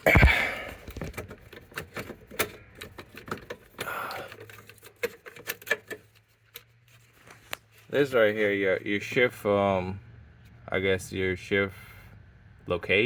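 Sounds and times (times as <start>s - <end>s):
plastic parts clicking and tapping: 0.2s - 6.7s.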